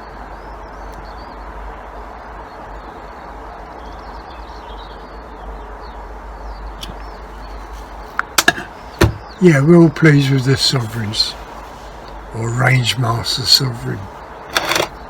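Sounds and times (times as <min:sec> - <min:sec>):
small birds chirping: 0:06.5 - 0:15.0
background hiss: 0:06.8 - 0:15.0.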